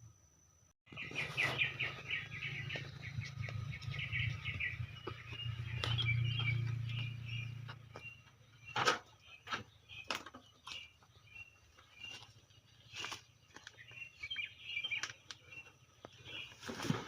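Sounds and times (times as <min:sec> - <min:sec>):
steady low hum: 0:00.0 - 0:08.8
songbird chirping: 0:00.9 - 0:17.0.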